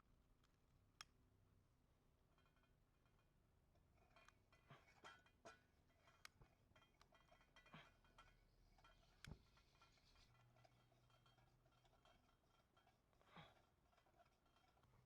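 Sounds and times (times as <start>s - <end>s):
faint metallic clinks and taps: 2.3s - 15.0s.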